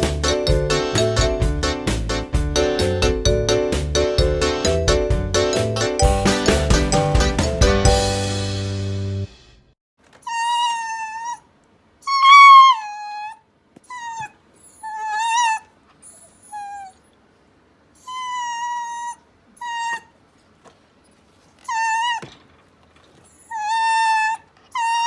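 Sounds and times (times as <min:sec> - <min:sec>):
dog whining: 0:10.2 - 0:17.2, 0:17.9 - 0:20.2, 0:21.6 - 0:22.4, 0:23.1 - 0:25.0.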